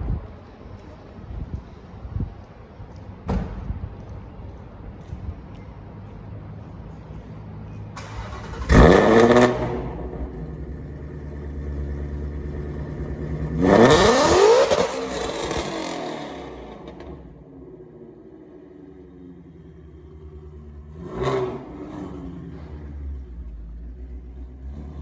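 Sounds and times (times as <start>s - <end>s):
car engine revving: 8.0s - 25.0s.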